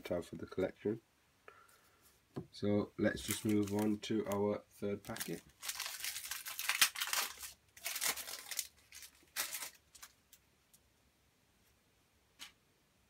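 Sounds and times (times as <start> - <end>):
foil wrapper tearing and crinkling: 3.2 - 4.4, 5.1 - 10.2.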